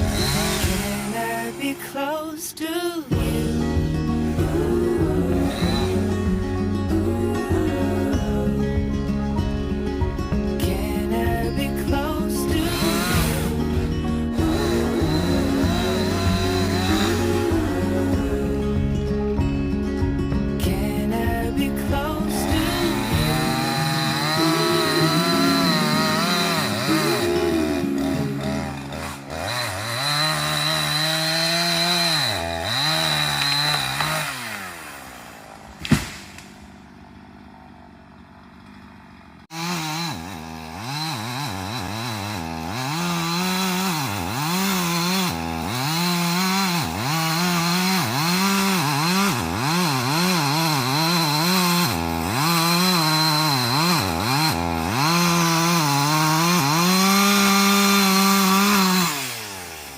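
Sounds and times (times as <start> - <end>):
chainsaw cutting wood: 0.0 - 59.9
sharp click: 35.8 - 36.6.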